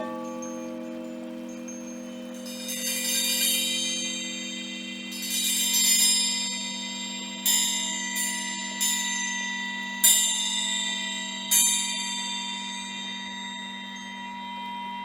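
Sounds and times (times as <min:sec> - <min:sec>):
bright metallic chime: 0:00.0 - 0:09.5
crystal singing bowls: 0:00.0 - 0:15.0.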